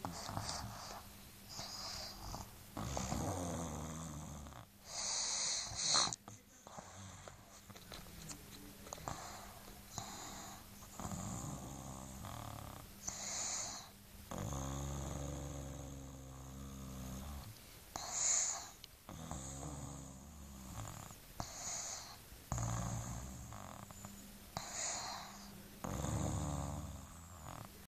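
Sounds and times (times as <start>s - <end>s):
baby hissing breaths: 0.0s - 2.5s, 4.8s - 6.2s, 13.0s - 13.9s, 17.9s - 18.8s, 21.4s - 22.2s, 24.6s - 25.5s
baby snoring: 0.0s - 7.8s, 8.9s - 27.9s.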